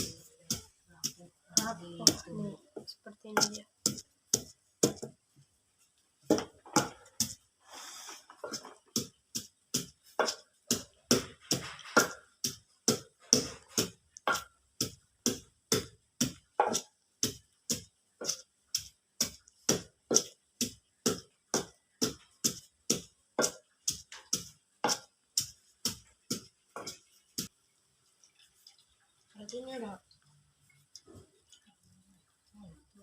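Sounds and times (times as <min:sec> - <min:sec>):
pestle pounding in a mortar: 0:00.0 - 0:05.2, 0:06.2 - 0:07.6, 0:08.4 - 0:27.6.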